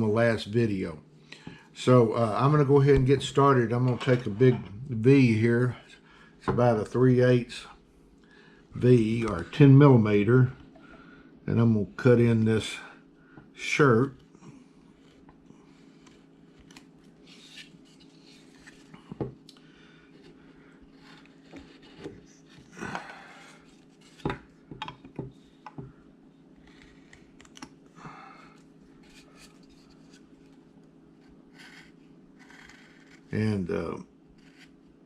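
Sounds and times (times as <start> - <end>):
chisel scraping wood: 20.9 - 22.2, 31.2 - 33.4, 34.4 - 34.8.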